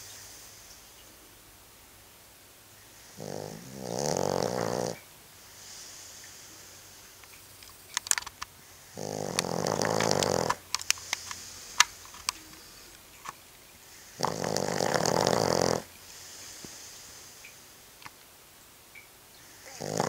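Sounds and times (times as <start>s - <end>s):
dog snoring: 3.0s - 5.9s, 8.8s - 10.6s, 13.9s - 16.8s, 19.5s - 20.0s
sharp clicks: 7.2s - 8.5s, 9.3s - 13.4s
dog breathing: 8.6s - 13.0s, 13.8s - 17.5s.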